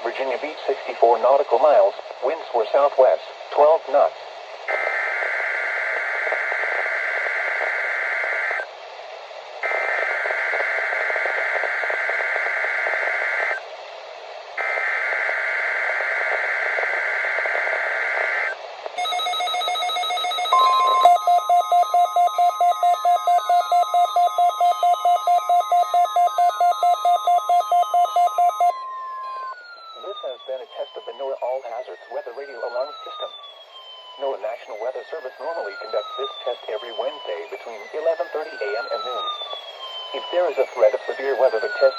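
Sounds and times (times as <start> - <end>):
steady alert tone: 19.0 - 29.4
pulsing electronic alarm tone: 19.0 - 34.2.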